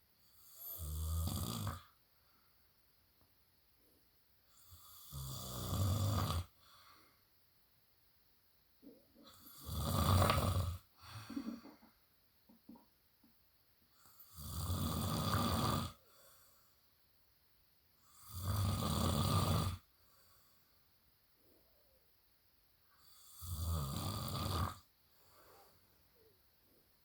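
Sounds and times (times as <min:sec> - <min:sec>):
man snoring: 0:00.3 - 0:01.9, 0:04.5 - 0:06.6, 0:09.2 - 0:10.9, 0:14.2 - 0:16.0, 0:18.1 - 0:19.9, 0:23.0 - 0:24.9.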